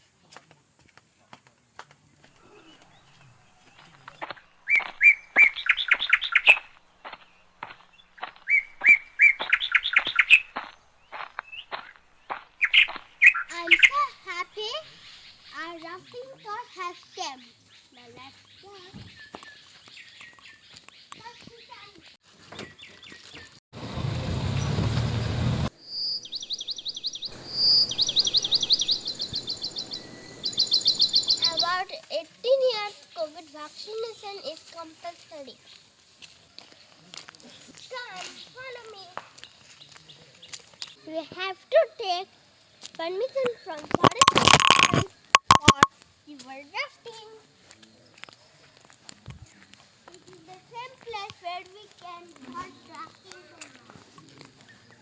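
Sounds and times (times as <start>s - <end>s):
songbird singing: 1.2s - 23.6s, 25.7s - 33.8s, 42.7s - 45.9s.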